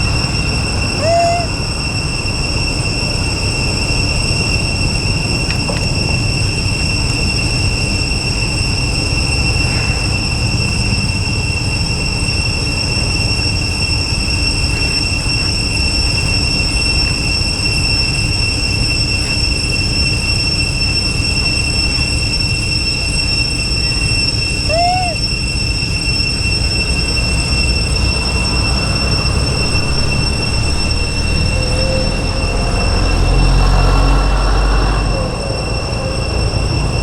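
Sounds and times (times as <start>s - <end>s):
short high squeak: 0.0s - 2.0s, 23.2s - 34.5s
high-pitched drone: 0.0s - 37.0s
low rumble: 26.4s - 37.0s.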